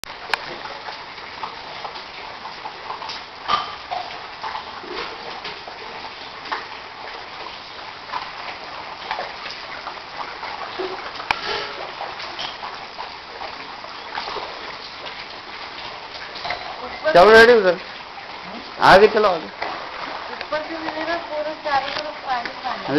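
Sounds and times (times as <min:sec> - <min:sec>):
rushing floodwater: 0:00.0 - 0:22.9
water splashes: 0:00.0 - 0:22.9.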